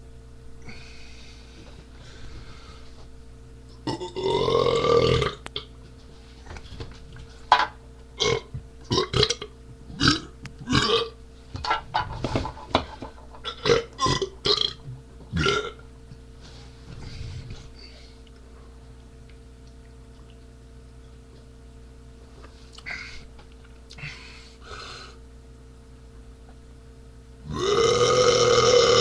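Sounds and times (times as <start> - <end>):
faint steady hum: 0.0 - 29.0
man burping: 3.8 - 5.4, 8.2 - 11.2, 13.4 - 14.8, 15.4 - 15.8, 27.4 - 29.0.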